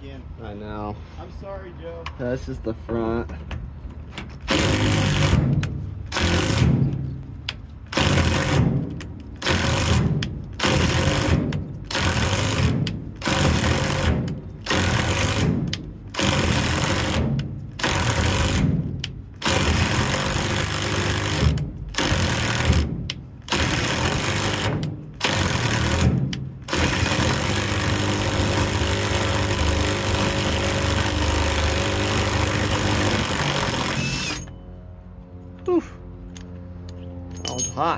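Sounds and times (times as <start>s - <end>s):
cordless drill running: 7.9s - 8.6s, 11.9s - 14.1s, 14.7s - 15.4s, 16.2s - 17.2s, 17.8s - 18.6s, 19.4s - 22.8s, 23.5s - 26.1s, 26.7s - 34.5s.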